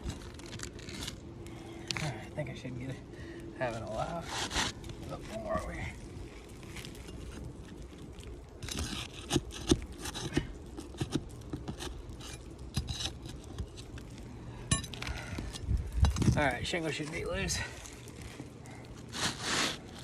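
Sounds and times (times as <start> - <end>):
tool scraping under roof shingles: 3.6 - 16.4, 17.0 - 20.0.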